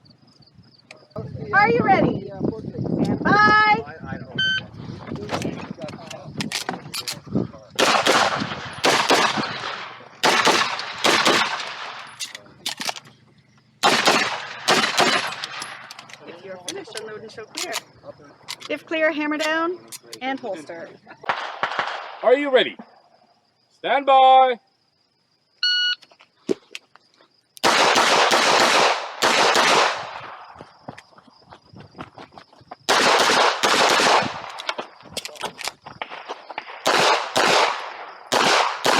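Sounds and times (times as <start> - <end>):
handgun shots with echo: 7.8 - 12.1, 13.8 - 15.9, 27.6 - 30.1, 36.8 - 38.9.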